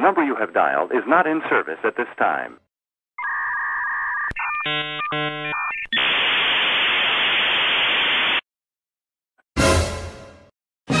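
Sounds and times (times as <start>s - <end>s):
modem beeping tones: 3.2s - 6.1s
loud static hiss: 6.0s - 8.4s.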